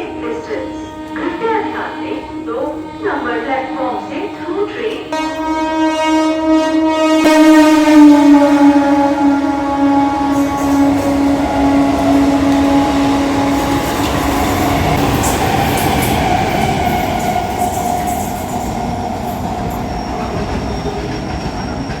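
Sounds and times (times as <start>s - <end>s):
train rumble and wheel noise: 0.0s - 22.0s
steady pitched tone: 1.4s - 13.1s.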